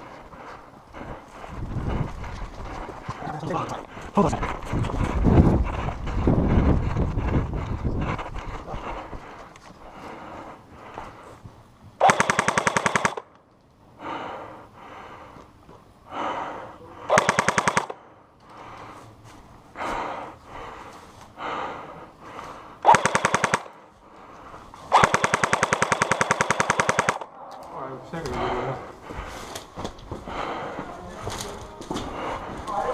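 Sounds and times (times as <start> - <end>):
airsoft rifle automatic fire: 12.0 - 13.3, 17.1 - 18.0, 22.8 - 23.8, 24.9 - 27.3.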